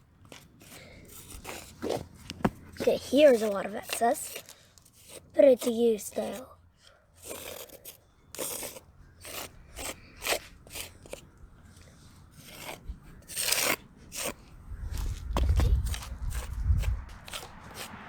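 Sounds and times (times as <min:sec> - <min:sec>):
wooden shim scraping pavement: 0:00.0 - 0:18.0
low rumble: 0:14.6 - 0:18.0.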